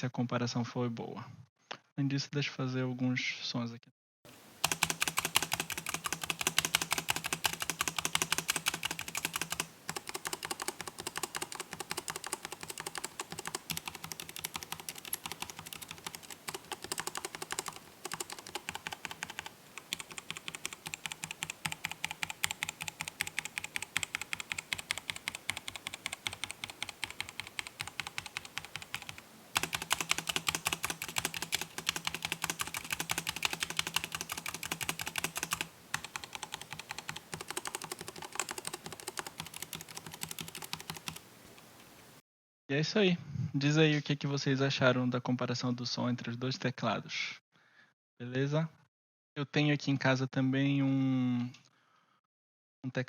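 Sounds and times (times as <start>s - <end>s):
mechanical keyboard clacking: 4.6s - 41.2s.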